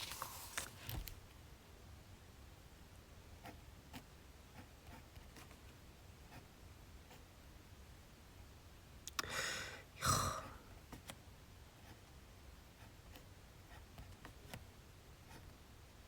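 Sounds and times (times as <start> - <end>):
person sighing: 9.2 - 10.6.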